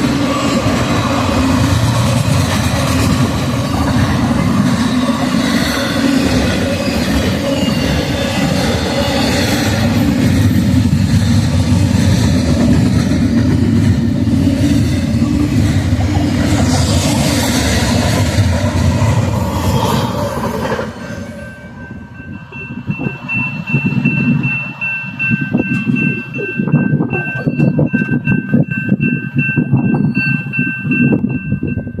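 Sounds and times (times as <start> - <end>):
freight train rumbling past: 0.0 - 32.0
steady high ringing tone: 21.0 - 32.0
gusty low rumble: 21.9 - 32.0.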